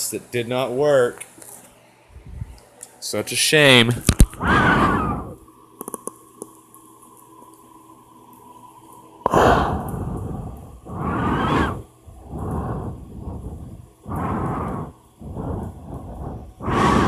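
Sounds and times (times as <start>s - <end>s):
man breathing heavily: 9.3s - 17.0s.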